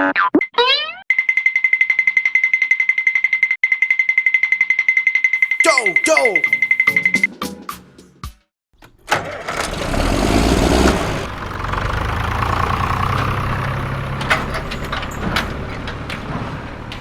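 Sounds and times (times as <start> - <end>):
tractor engine idling: 11.0 - 15.2.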